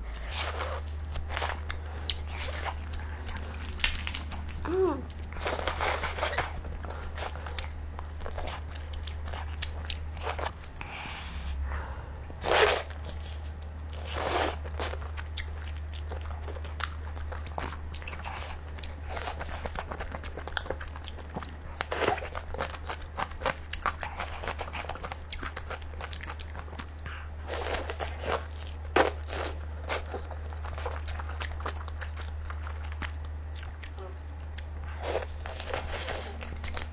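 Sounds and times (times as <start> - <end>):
steady low hum: 0.0 - 36.9
person biting and chewing: 0.1 - 11.6, 12.3 - 15.5.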